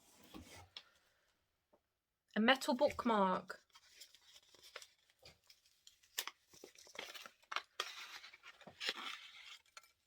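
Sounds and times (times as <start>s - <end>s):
packaging crinkling and tearing: 3.8s - 9.9s.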